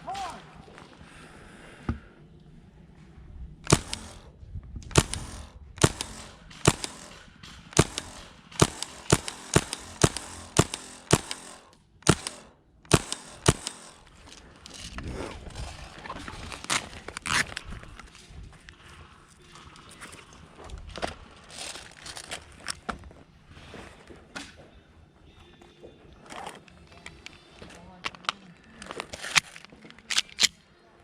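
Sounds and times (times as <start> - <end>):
airsoft gun shots: 3.6 - 14.3.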